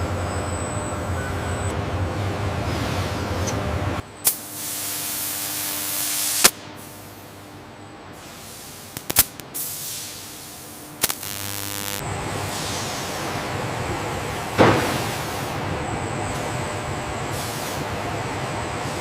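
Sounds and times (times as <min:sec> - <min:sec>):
steady hiss: 0:08.2 - 0:12.0.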